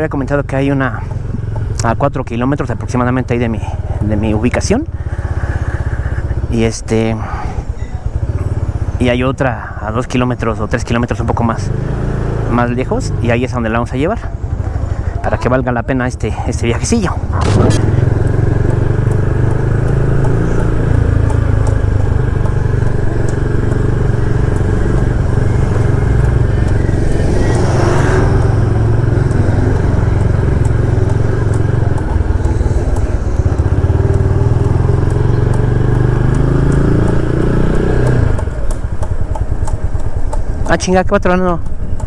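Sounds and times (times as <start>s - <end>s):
motorcycle engine running: 0.0s - 42.0s
brief whoosh: 17.4s - 18.6s.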